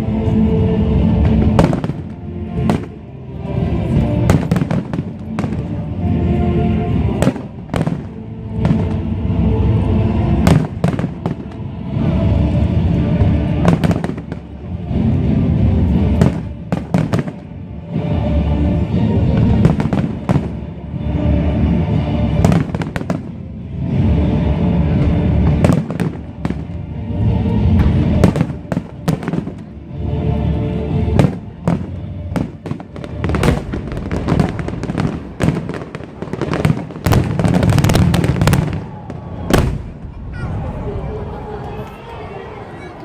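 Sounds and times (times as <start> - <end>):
music playing: 0.0 - 43.0
fireworks bursting and crackling: 1.2 - 3.0, 3.9 - 5.8, 7.1 - 9.0, 10.4 - 11.6, 13.2 - 14.6, 15.7 - 17.5, 19.2 - 20.7, 22.2 - 23.4, 25.0 - 26.8, 27.6 - 29.7, 31.1 - 40.6.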